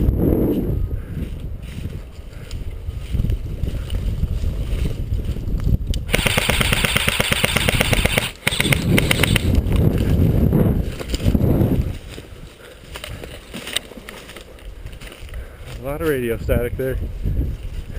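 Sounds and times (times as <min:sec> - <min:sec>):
airsoft rifle firing full auto: 0:06.1 - 0:09.5.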